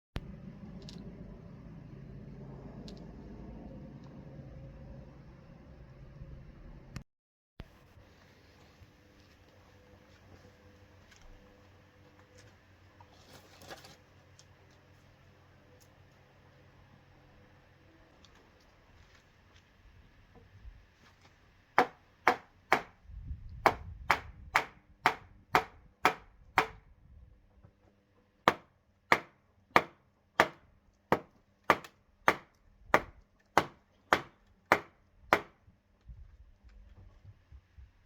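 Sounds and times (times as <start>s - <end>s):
tool chopping into wood: 21.8s - 23.0s, 23.6s - 26.8s, 28.5s - 35.6s.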